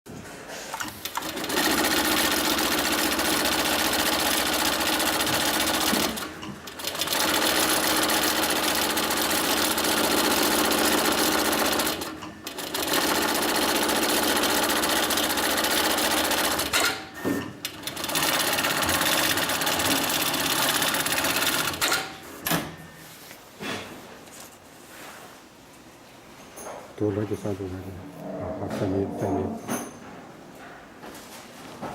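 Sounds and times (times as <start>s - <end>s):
sewing machine stitching fast: 0.9s - 17.0s, 17.7s - 22.1s.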